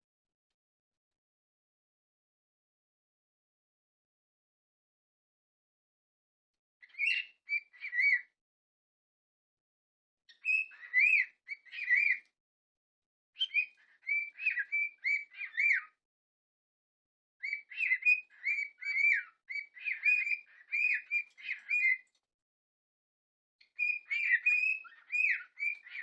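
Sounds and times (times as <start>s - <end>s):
cockatiel whistling: 6.9s - 8.2s, 10.4s - 12.2s, 13.4s - 15.9s, 17.4s - 22.0s, 23.8s - 26.0s.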